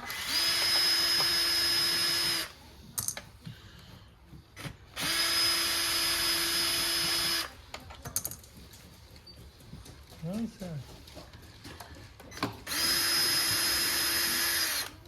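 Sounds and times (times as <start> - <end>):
power drill whine: 0.0 - 2.5, 5.0 - 7.5, 12.6 - 15.0.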